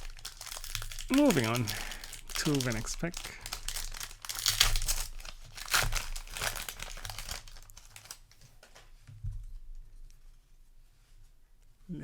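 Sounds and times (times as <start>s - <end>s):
foil wrapper crinkling: 0.0s - 8.9s
rustling: 0.0s - 11.9s.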